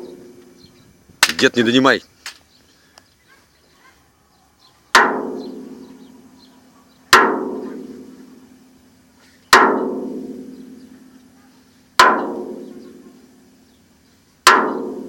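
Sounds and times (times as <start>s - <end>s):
barrel struck ringing: 4.9s - 6.4s, 7.1s - 11.0s, 12.0s - 13.4s, 14.5s - 15.0s.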